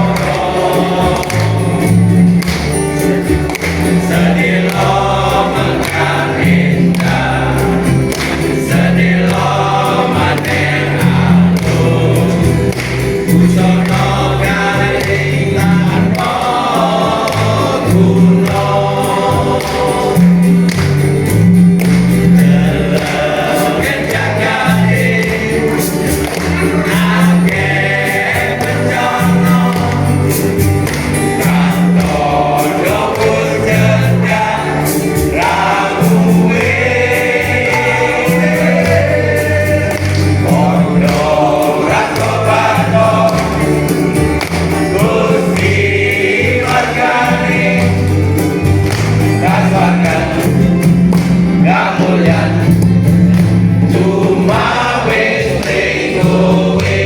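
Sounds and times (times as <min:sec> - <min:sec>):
bass and beat accompaniment: 0:00.0 - 0:57.0
choir singing gospel music: 0:00.0 - 0:57.0.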